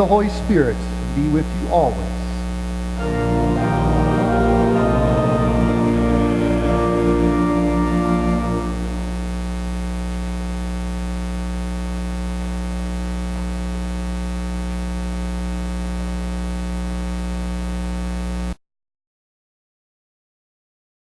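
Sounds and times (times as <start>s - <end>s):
electrical mains hum: 0.0s - 18.4s
organ chord: 3.0s - 9.4s.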